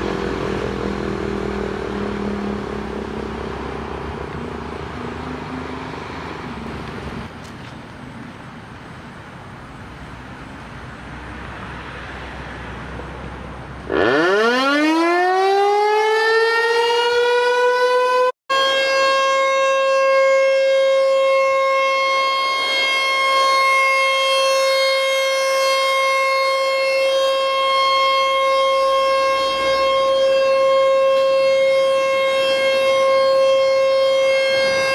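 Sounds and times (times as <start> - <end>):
warning siren wailing: 0.0 - 6.5, 13.9 - 34.9.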